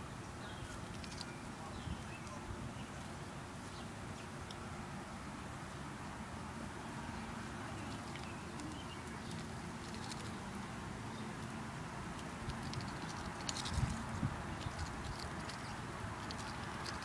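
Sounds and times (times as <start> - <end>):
duck bill pecking clicks: 7.9 - 10.6, 11.3 - 17.0.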